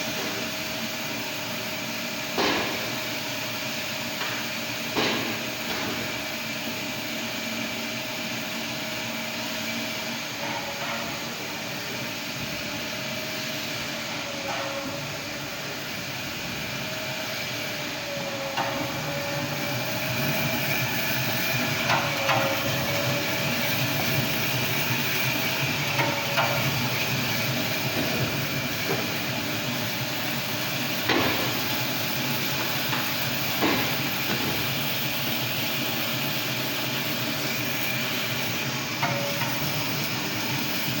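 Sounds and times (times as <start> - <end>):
towel cutting machine humming: 14.0 - 41.0.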